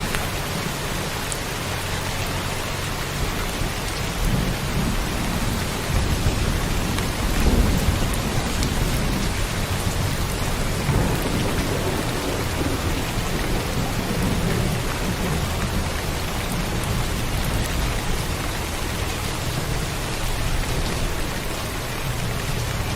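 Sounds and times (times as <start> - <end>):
heavy rain: 0.0 - 22.9
low rolling thunder: 2.8 - 22.9.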